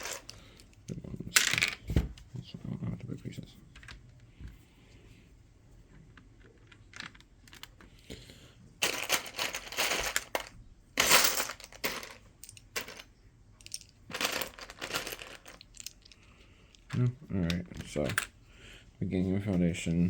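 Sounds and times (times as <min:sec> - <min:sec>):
plastic bricks rattling: 0:13.6 - 0:16.2.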